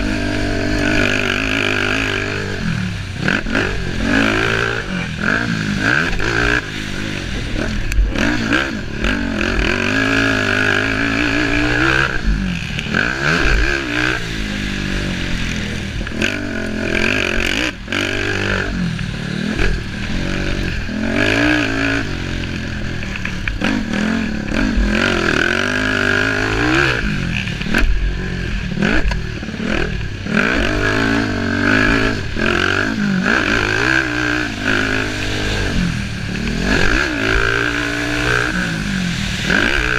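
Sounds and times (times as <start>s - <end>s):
racing engines revving: 0.0s - 39.9s.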